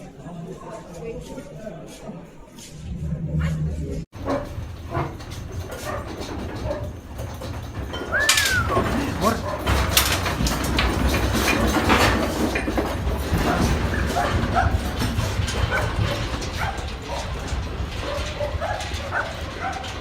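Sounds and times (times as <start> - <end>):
steady low rumble: 0.0 - 4.8
dog barking and yipping: 5.7 - 7.0, 13.3 - 20.0.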